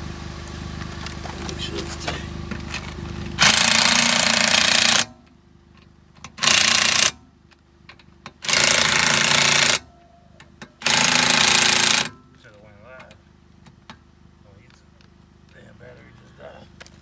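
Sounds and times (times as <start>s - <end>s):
impact wrench hammering: 3.4s - 5.2s, 6.2s - 7.2s, 8.3s - 9.8s, 10.7s - 12.2s.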